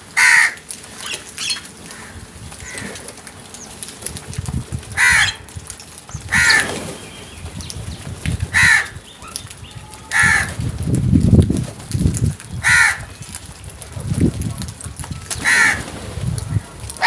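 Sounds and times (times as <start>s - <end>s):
crows cawing: 0.2s - 0.6s, 1.9s - 3.0s, 5.0s - 5.4s, 6.3s - 6.6s, 8.5s - 9.0s, 10.0s - 10.6s, 12.6s - 13.1s, 15.4s - 15.9s.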